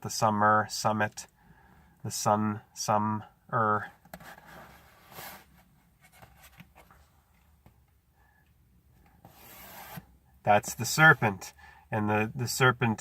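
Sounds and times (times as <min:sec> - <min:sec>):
faint scratching: 0:09.2 - 0:10.1.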